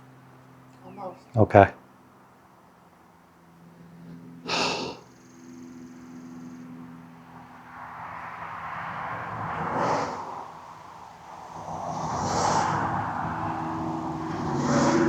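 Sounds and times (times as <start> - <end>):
man breathing hard: 3.9 - 5.0.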